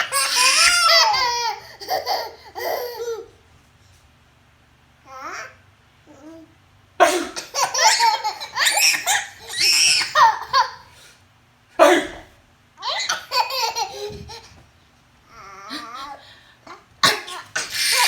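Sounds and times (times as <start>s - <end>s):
baby laughing: 0.0s - 3.4s, 7.3s - 10.9s, 12.8s - 14.6s, 15.3s - 18.0s
person sneezing: 7.0s - 7.5s, 11.8s - 12.4s, 17.0s - 17.7s.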